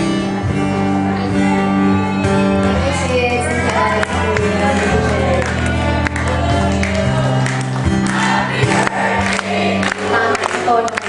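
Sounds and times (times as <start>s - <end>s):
live band music: 0.0s - 11.0s
voices singing: 2.8s - 11.0s.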